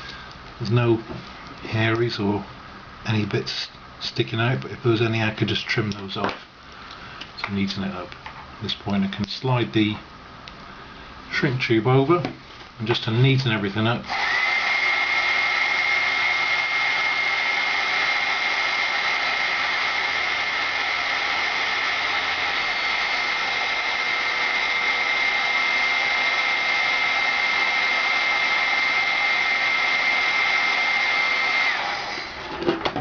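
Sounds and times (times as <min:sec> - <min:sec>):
high fan whine: 0:00.0 - 0:33.0
heat gun blowing air: 0:14.1 - 0:32.4.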